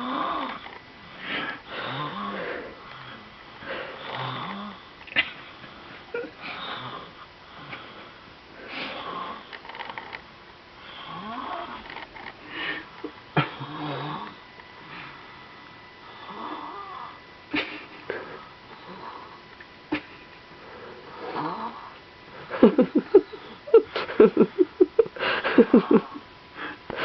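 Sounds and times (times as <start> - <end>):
baby snoring: 0.0 - 4.8, 8.7 - 10.0, 10.9 - 12.0, 13.4 - 14.4, 16.1 - 17.2, 21.0 - 22.0.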